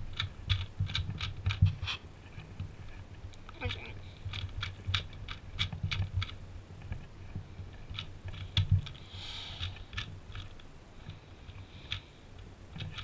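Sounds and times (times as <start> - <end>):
puzzle cube layers clicking: 0.0 - 1.9.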